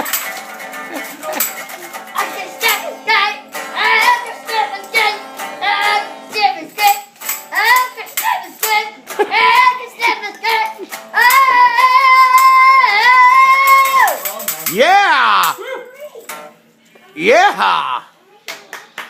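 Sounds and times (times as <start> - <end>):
tambourine jingles: 0.0 - 3.0, 6.5 - 9.0, 12.2 - 16.3
child singing: 2.1 - 14.2.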